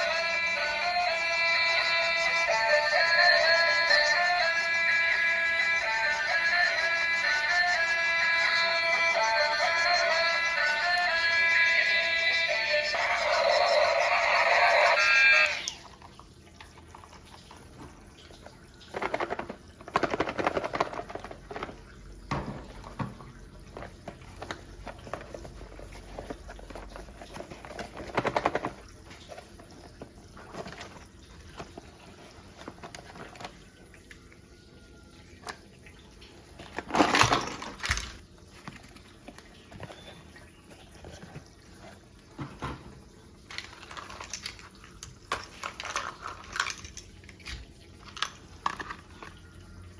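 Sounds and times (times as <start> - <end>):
plastic toy pieces clicking: 18.9 - 21.7, 36.9 - 38.2, 43.5 - 49.3.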